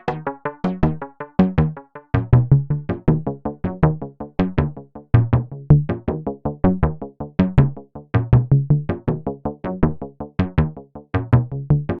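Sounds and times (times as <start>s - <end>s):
synth bass line: 0.0s - 4.0s
plucked synth notes: 0.0s - 12.0s.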